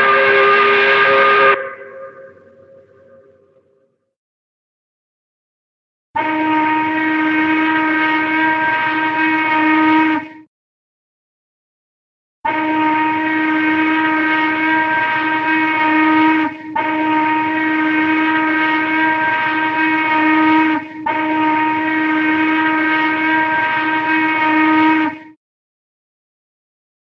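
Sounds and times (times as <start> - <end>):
train whistle blasts: 0.0 - 3.7, 6.2 - 10.5, 12.5 - 25.4.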